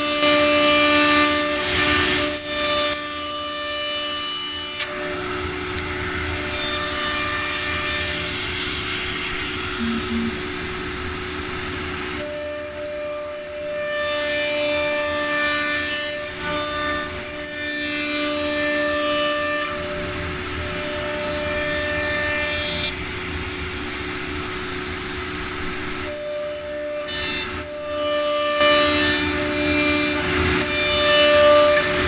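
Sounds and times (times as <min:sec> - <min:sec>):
router spindle whining: 0:00.0 - 0:23.0, 0:25.6 - 0:32.0
high tones: 0:09.8 - 0:10.7.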